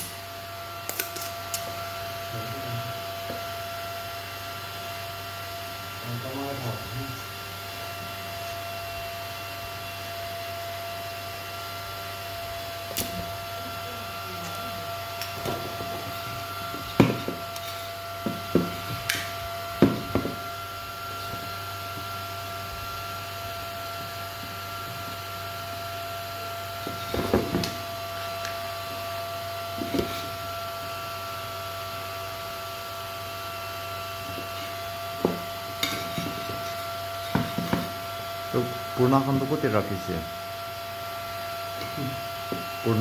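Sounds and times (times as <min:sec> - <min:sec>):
electrical hum with faint whine: 0:00.0 - 0:43.0
tools knocking on workbench: 0:16.7 - 0:17.5, 0:18.2 - 0:19.2, 0:19.8 - 0:20.4, 0:26.9 - 0:27.8, 0:35.2 - 0:36.7, 0:37.3 - 0:38.0.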